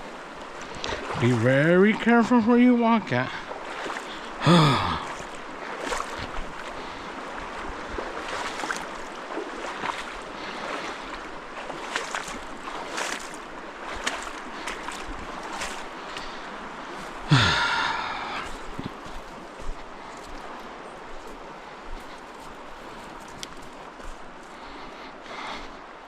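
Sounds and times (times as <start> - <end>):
person wading through water: 0.0 - 26.0
stream water running: 0.0 - 26.0.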